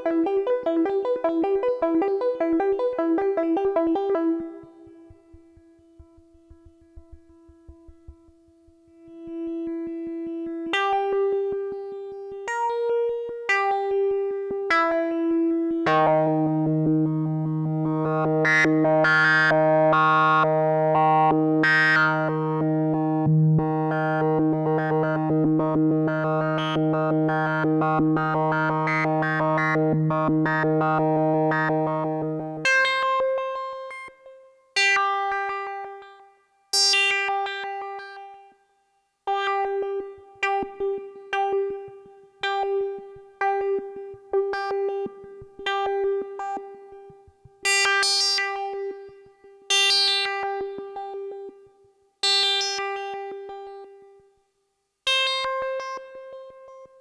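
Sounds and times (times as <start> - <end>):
analog synthesizer notes: 0.0 - 10.0, 15.9 - 33.0.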